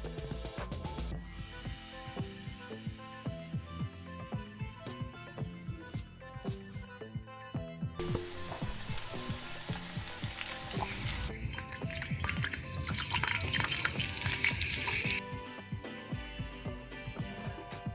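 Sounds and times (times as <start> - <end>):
background music with plucked notes: 0.0 - 17.9
omelet sizzling in a pan: 8.0 - 15.2.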